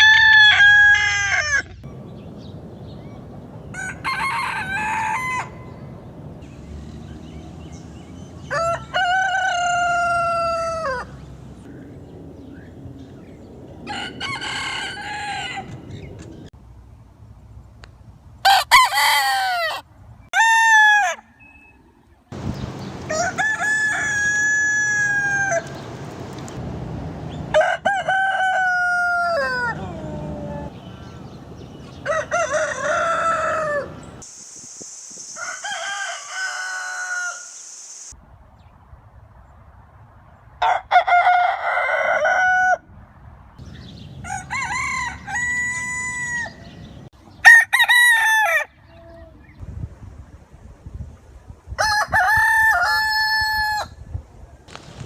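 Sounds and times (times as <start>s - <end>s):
roosters crowing: 0.0s - 1.9s, 3.6s - 6.0s, 7.0s - 11.4s, 13.8s - 16.1s, 18.4s - 21.6s, 22.6s - 26.0s, 27.3s - 34.2s, 35.3s - 37.8s, 40.6s - 42.9s, 44.0s - 49.0s, 51.8s - 54.0s.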